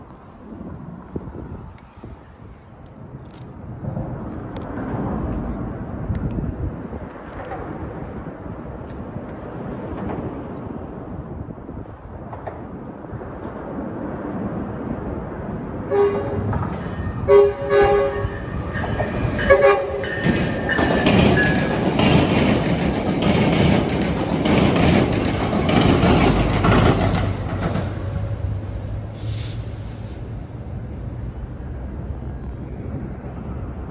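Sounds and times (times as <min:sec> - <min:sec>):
train rumble: 0:00.0 - 0:33.9
train horn short blasts: 0:15.9 - 0:20.6
train wheels clattering: 0:16.5 - 0:29.8.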